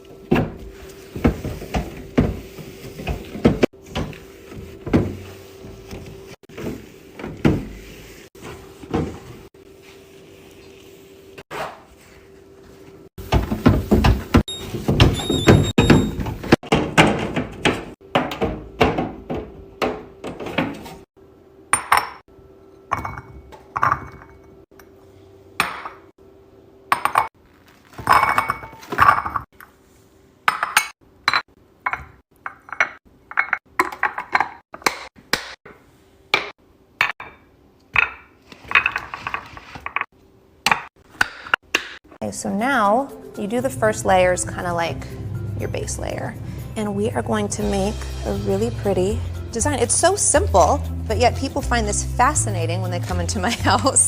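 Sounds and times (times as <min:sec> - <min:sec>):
jars and boxes knocking and clinking: 0:22.9 - 0:24.6, 0:28.0 - 0:29.5, 0:30.5 - 0:35.6.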